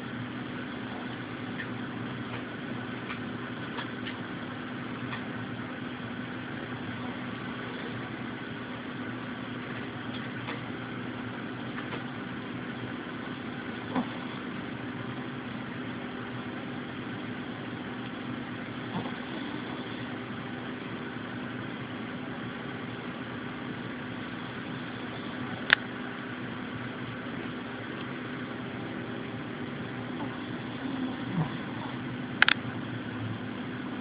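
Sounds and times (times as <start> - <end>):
pet snoring: 6.7 - 8.3, 13.2 - 15.1, 18.7 - 20.9, 24.7 - 25.7, 29.8 - 32.4.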